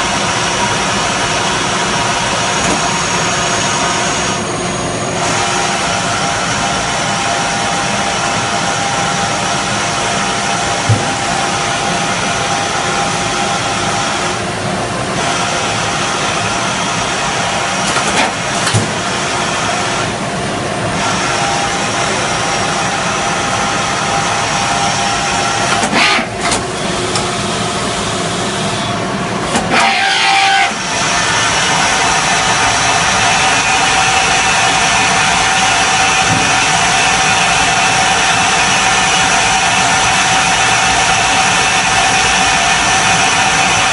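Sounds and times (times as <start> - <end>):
lathe running: 0.0 - 43.9.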